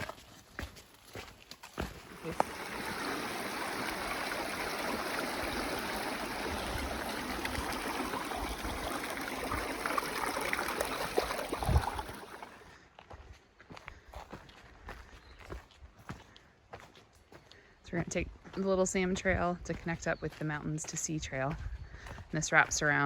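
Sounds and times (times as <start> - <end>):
mountain stream running: 1.7 - 12.8.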